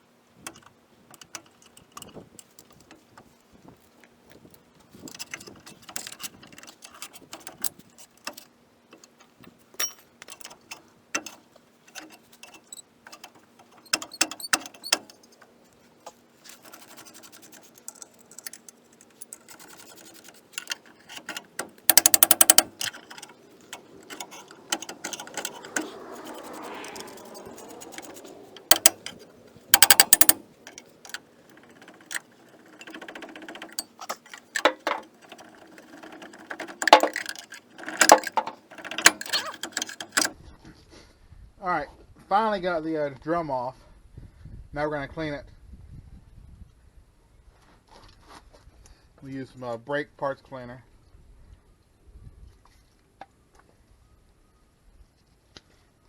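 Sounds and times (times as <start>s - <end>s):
metal tools clinking: 4.9s - 15.6s, 16.4s - 40.4s
rapid metal clattering: 16.4s - 40.3s.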